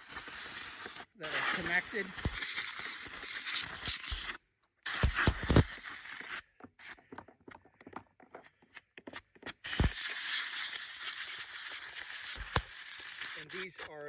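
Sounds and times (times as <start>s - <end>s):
steady hiss: 0.0s - 7.1s, 8.7s - 14.0s
hands clicking on plastic body: 6.5s - 9.5s.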